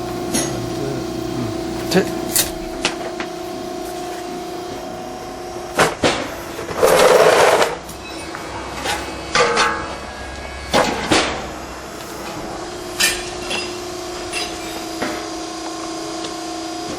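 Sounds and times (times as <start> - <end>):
small drive motor humming: 0.0 - 9.3, 11.4 - 16.9.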